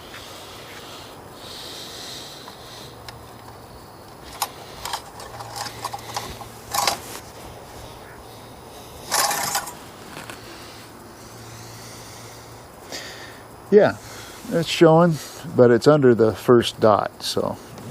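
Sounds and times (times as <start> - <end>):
steady background hiss: 0.0 - 17.9
scraping rustle: 4.2 - 11.4.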